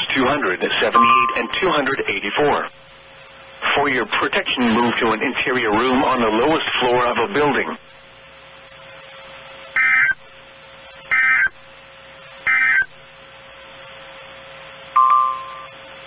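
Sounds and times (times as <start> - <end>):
steady hum: 0.0 - 16.0
brief beep: 1.0 - 1.8, 15.0 - 15.7
digital data squawks: 1.0 - 1.9, 15.0 - 15.7.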